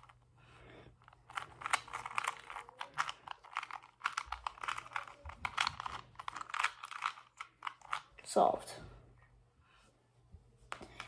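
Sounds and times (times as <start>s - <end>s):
puzzle cube plastic clicks: 1.0s - 8.2s.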